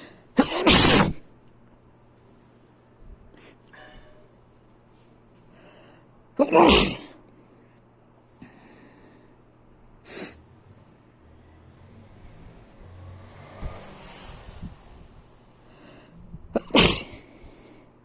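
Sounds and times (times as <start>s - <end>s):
person sneezing: 0.0s - 1.2s, 6.4s - 7.2s, 16.6s - 17.3s.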